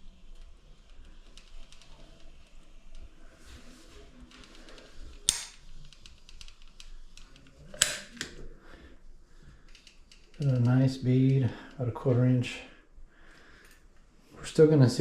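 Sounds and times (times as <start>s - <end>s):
caulking gun snapping: 5.3s - 5.6s, 7.7s - 8.4s.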